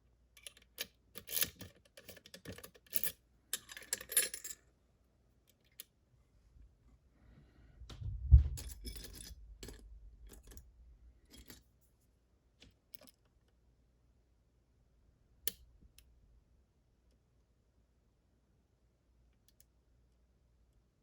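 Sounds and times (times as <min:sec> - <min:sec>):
low bump: 0:07.8 - 0:09.0.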